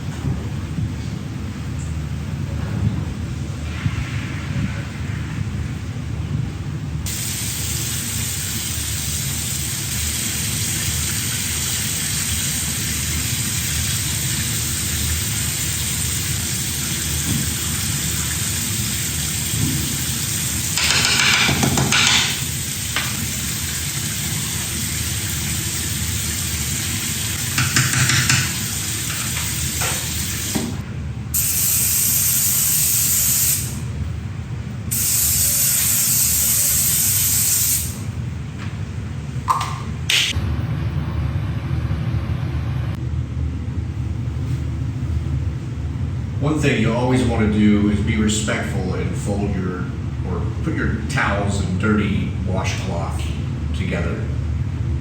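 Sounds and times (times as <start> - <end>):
shower running: 7.1 - 30.8, 31.4 - 33.8, 34.9 - 38.1.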